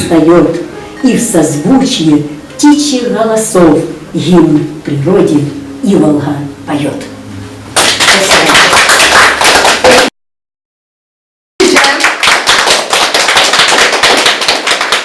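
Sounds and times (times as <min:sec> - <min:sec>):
audience applauding: 0:07.8 - 0:10.1, 0:11.6 - 0:15.0.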